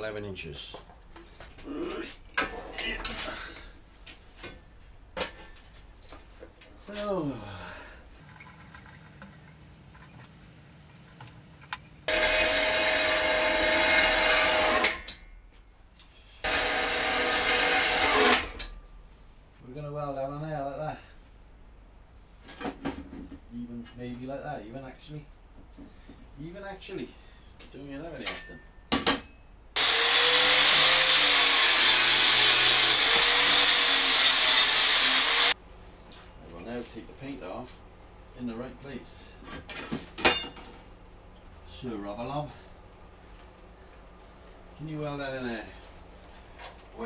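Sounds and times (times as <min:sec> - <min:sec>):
faint wavering whine: 0:01.3 - 0:12.5
angle grinder grinding steel: 0:08.2 - 0:15.2, 0:16.4 - 0:18.6, 0:29.8 - 0:35.6
electric power tool whirring: 0:11.2 - 0:15.1, 0:16.4 - 0:18.6, 0:29.8 - 0:35.6.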